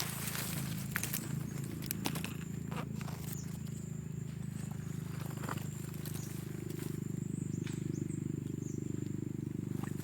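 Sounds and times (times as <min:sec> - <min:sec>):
rustling: 0:00.0 - 0:03.8
steady low hum: 0:00.0 - 0:10.0.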